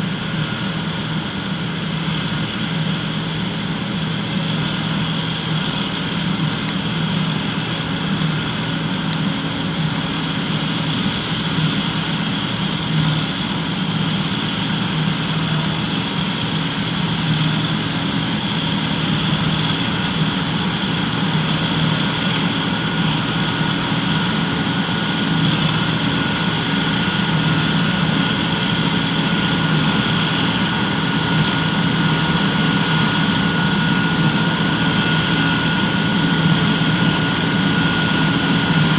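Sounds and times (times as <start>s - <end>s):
combine harvester engine drone: 0.0s - 38.9s
thin steady whine: 0.0s - 38.9s.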